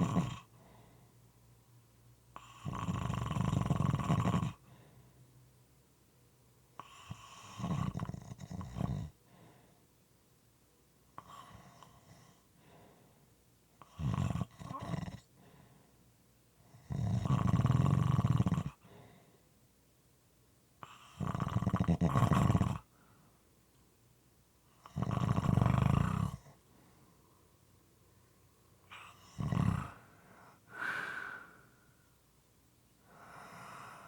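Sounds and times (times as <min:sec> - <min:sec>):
moist snoring: 0:00.0 - 0:00.5, 0:02.4 - 0:04.6, 0:06.8 - 0:09.2, 0:13.8 - 0:15.3, 0:16.8 - 0:18.8, 0:20.8 - 0:22.9, 0:24.8 - 0:26.6, 0:28.9 - 0:31.8.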